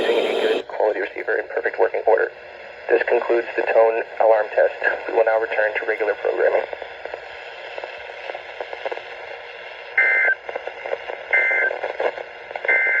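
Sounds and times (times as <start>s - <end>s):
radio receiver hissing: 0.0s - 0.6s.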